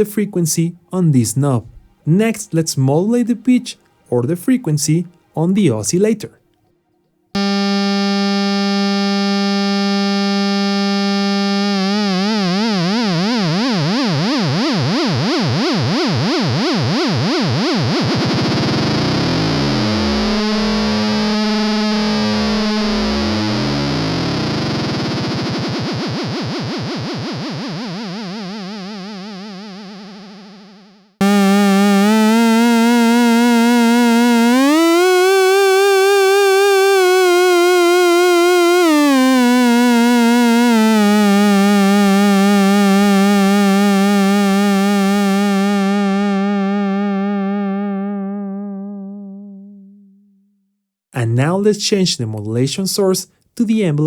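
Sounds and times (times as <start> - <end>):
buzzy synthesizer note warbling: 7.4 - 50.3
synthesizer note jumping pitch: 7.4 - 50.3.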